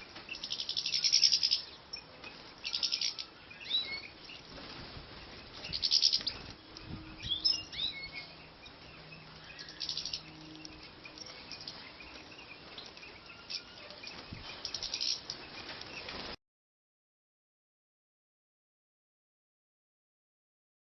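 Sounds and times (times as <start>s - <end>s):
finches chirping: 0.1s - 4.5s, 5.2s - 16.2s.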